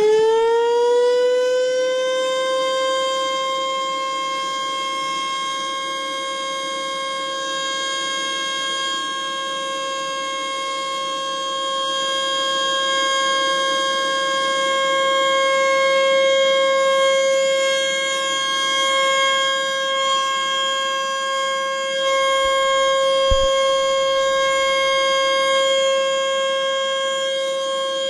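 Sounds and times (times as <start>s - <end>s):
warning siren steady tone: 0.0s - 28.0s
low bump: 23.2s - 24.1s.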